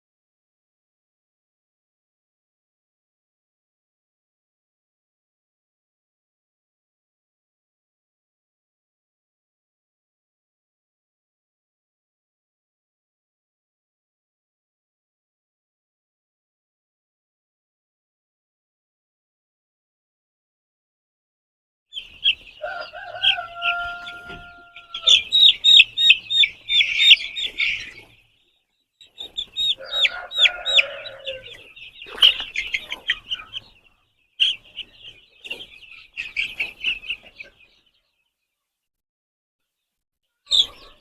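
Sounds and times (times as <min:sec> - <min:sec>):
chicken clucking: 0:21.9 - 0:38.2, 0:40.4 - 0:41.0
chicks peeping: 0:21.9 - 0:38.6, 0:40.4 - 0:41.0
chicken drawn-out call: 0:22.0 - 0:28.2, 0:29.0 - 0:33.8, 0:40.4 - 0:41.0.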